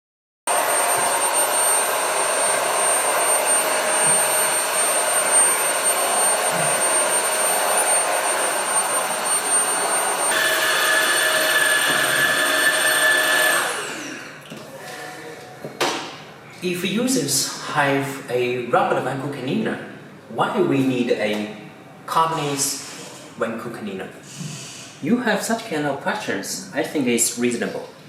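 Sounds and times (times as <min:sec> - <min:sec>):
motor spinning down: 0:00.5 - 0:14.4
stick vacuum running: 0:00.5 - 0:14.6.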